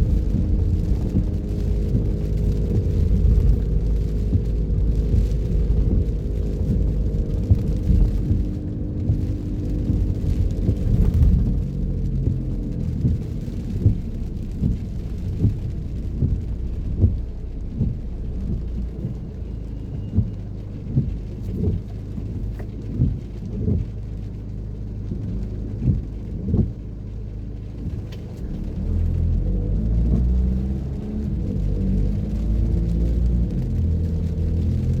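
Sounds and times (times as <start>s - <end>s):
car driving in rain: 0.0s - 35.0s.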